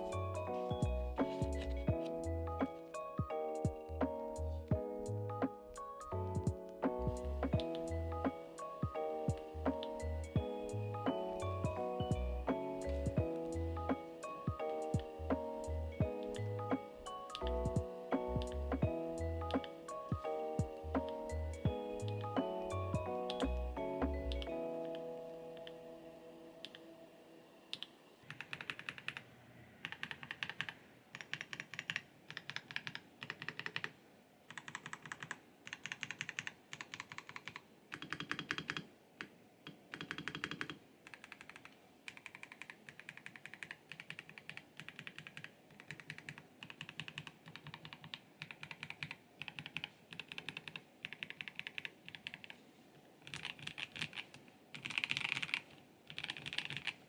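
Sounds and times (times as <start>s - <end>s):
mechanical keyboard typing: 6.4s - 7.9s, 12.8s - 23.6s, 27.7s - 52.6s, 53.2s - 57.0s.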